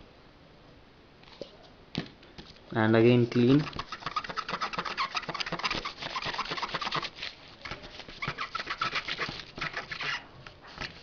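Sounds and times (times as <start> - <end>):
eraser rubbing on metal contacts: 3.3 - 7.2, 8.1 - 10.2.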